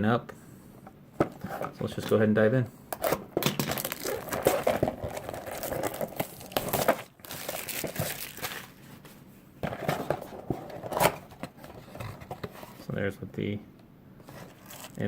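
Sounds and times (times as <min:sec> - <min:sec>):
card packs torn open by hand: 0:03.0 - 0:08.8, 0:14.5 - 0:15.0
packaging crinkling and rustling: 0:03.0 - 0:12.9, 0:14.2 - 0:15.0.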